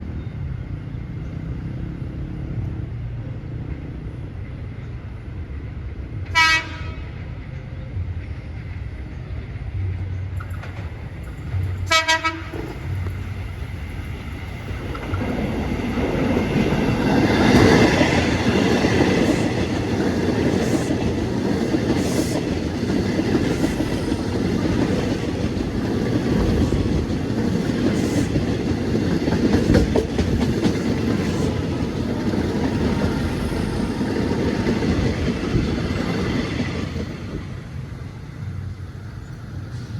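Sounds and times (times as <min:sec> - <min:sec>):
train wheels rumbling on rails: 0:00.0 - 0:39.9
train horn blasts: 0:06.3 - 0:07.2, 0:11.9 - 0:12.8.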